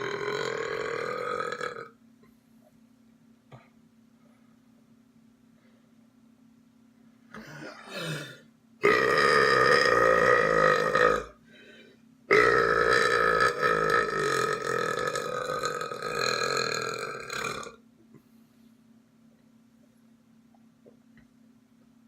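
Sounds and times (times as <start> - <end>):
person burping: 0.0 - 2.0, 7.3 - 11.4, 12.3 - 17.8.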